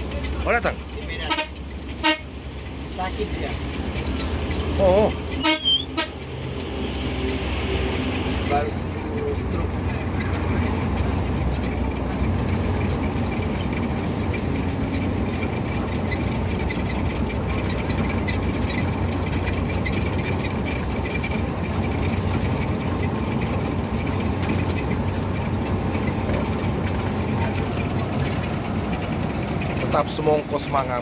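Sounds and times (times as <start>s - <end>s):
bus engine and road rumble: 0.0s - 31.0s
light rattles: 8.4s - 31.0s.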